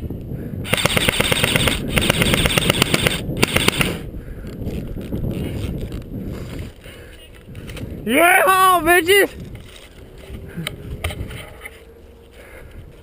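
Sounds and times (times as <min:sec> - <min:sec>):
airsoft gun firing bursts: 0:00.7 - 0:04.0.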